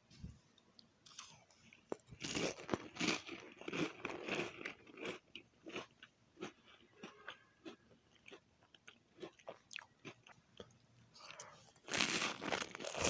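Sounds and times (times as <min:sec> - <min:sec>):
chewing crunches: 0:01.1 - 0:13.0
person biting a cracker: 0:02.0 - 0:03.2, 0:11.2 - 0:13.0.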